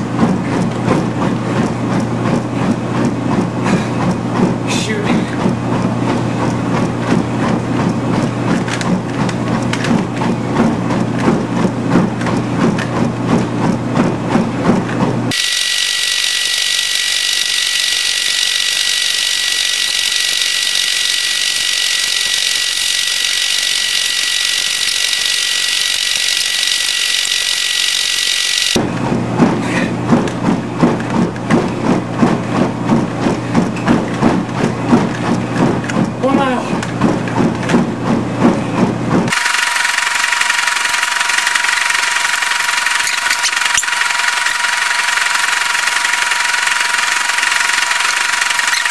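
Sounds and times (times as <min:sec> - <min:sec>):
treadmill motor hum and belt noise: 0:00.0 - 0:48.9
footfalls on treadmill: 0:00.1 - 0:15.3, 0:29.0 - 0:39.3.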